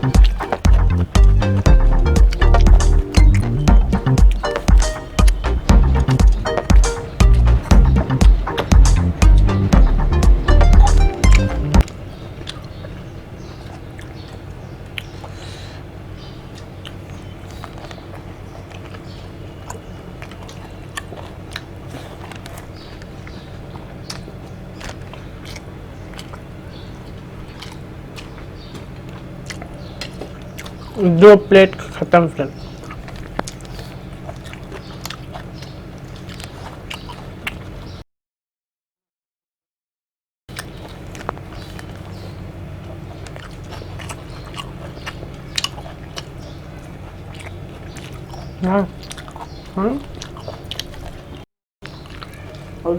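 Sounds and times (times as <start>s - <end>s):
wet mouth clicks and smacks: 0.0s - 7.7s, 16.5s - 26.5s, 27.4s - 31.0s, 32.7s - 37.8s, 40.5s - 52.4s
low hum: 0.0s - 11.9s
people chewing and biting: 0.0s - 38.0s, 40.5s - 52.9s.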